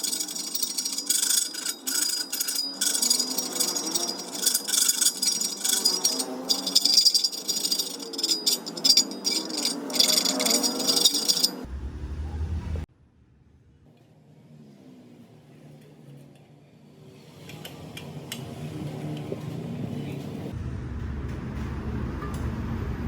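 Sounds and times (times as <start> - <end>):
rattling metal scraping: 0.0 - 11.7.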